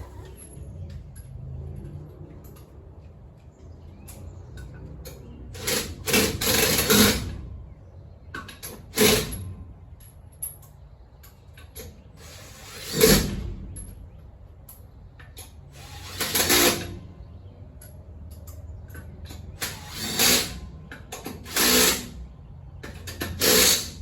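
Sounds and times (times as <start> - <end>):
loud noisy tool bursts: 21.5 - 22.1, 23.4 - 24.0.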